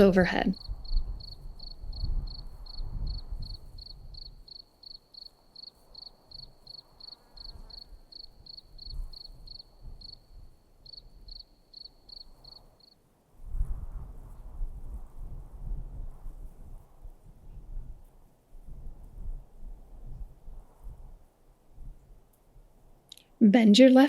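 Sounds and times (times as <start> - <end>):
cricket chirping: 0.5 - 13.0.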